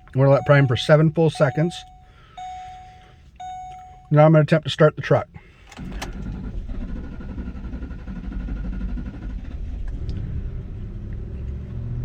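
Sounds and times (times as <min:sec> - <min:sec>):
starter motor cranking: 0:05.7 - 0:10.1.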